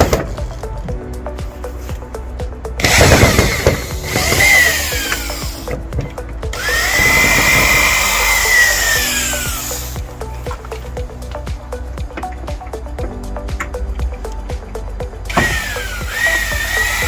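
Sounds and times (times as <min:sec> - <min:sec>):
background music: 0:00.0 - 0:17.0
power drill motor whine: 0:02.8 - 0:05.7, 0:06.6 - 0:10.0, 0:15.3 - 0:17.0.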